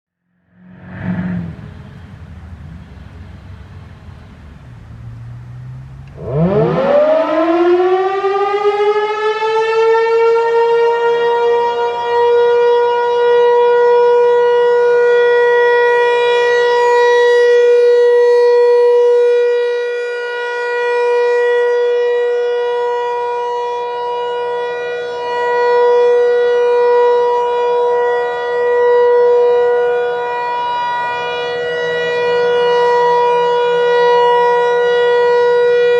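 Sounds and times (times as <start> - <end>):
low rumble: 0.4 - 6.2
warning siren winding up: 6.0 - 35.9.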